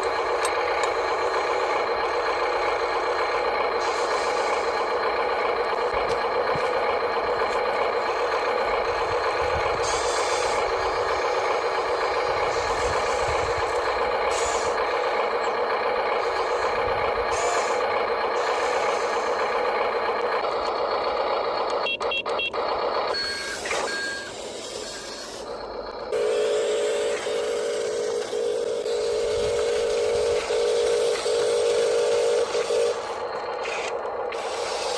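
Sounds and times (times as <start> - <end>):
rc truck mechanical hum: 0.0 - 34.9
pulsing reversing alarm tone: 21.8 - 34.9.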